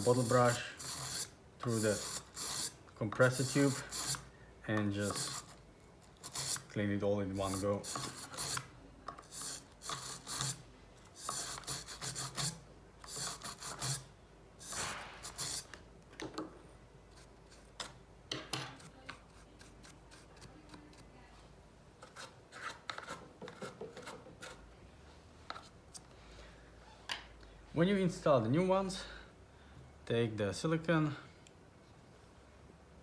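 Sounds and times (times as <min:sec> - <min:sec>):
brush scrubbing threads: 0:00.0 - 0:04.2, 0:05.0 - 0:05.6.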